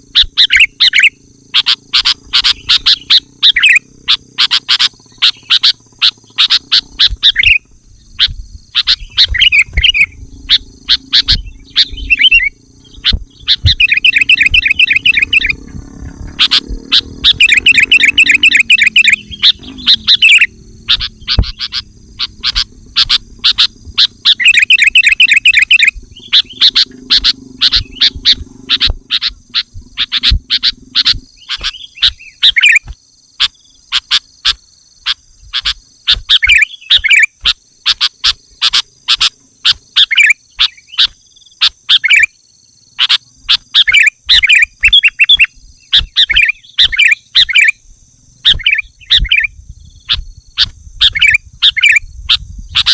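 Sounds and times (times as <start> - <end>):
low steady drone: 0.0 - 32.0
bulbul chirping and singing: 0.0 - 52.9.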